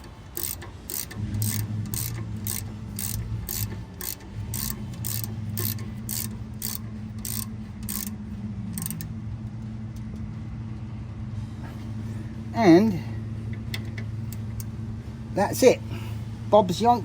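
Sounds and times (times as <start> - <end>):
ratchet wrench clicking: 0.0 - 9.1, 13.6 - 14.7
steady low hum: 0.0 - 17.0.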